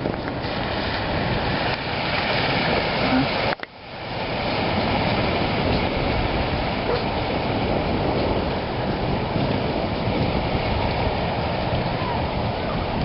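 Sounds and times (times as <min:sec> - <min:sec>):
floodwater rushing: 0:00.0 - 0:13.0.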